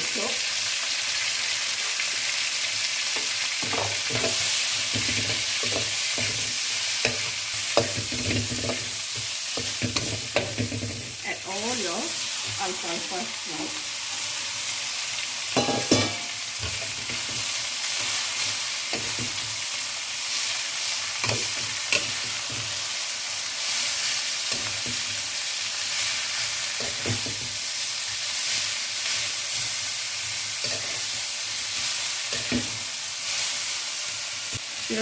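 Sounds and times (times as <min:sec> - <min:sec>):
food sizzling in oil: 0:00.0 - 0:35.0
utensil knocking on pan: 0:15.6 - 0:16.3.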